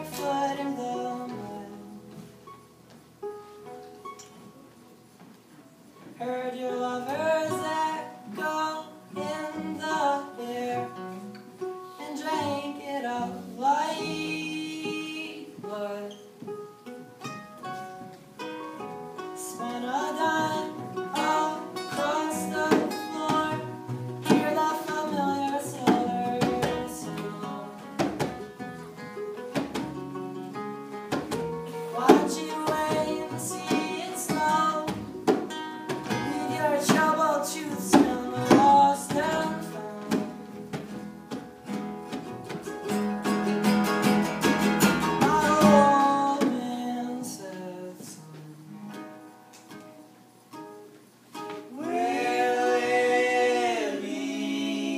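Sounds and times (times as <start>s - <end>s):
person singing: 0.0s - 2.0s, 6.2s - 11.2s, 12.0s - 16.2s, 19.4s - 28.3s, 31.6s - 35.3s, 36.0s - 40.7s, 45.0s - 48.7s, 51.7s - 54.9s
acoustic guitar: 0.0s - 54.9s.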